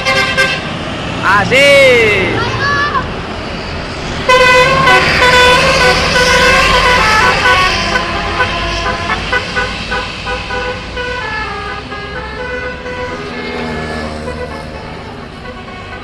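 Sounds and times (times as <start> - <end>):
bus multi-tone air horn tune: 0.0 - 0.8, 4.2 - 13.5, 14.1 - 16.0.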